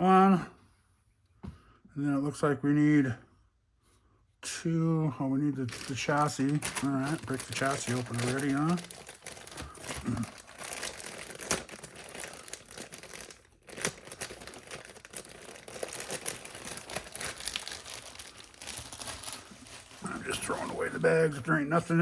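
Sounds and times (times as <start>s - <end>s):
plastic bags crinkling: 5.6s - 22.0s.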